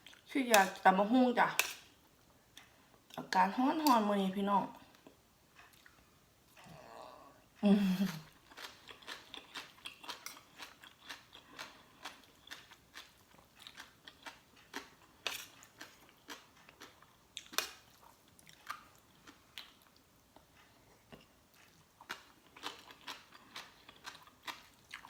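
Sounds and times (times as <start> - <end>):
person chewing crunchy food: 8.1 - 25.0.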